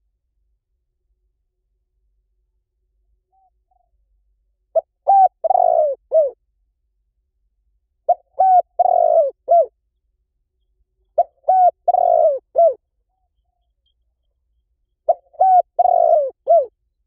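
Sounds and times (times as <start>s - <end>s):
dove cooing: 4.8s - 6.4s, 8.1s - 9.8s, 11.2s - 12.8s, 15.1s - 16.7s.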